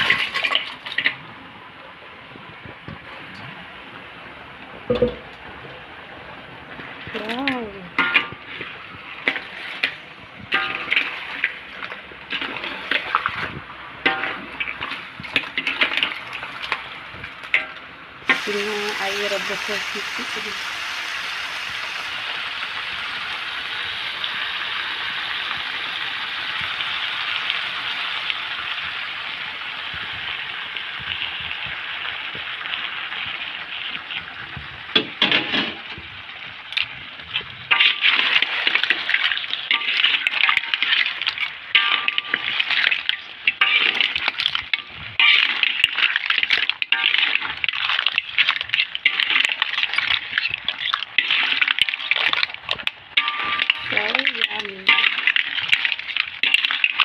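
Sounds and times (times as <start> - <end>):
clam shells clattering in a pan: 0.0 - 1.2, 7.2 - 20.7, 36.8 - 57.0
sauce sizzling in a pan: 18.2 - 33.6.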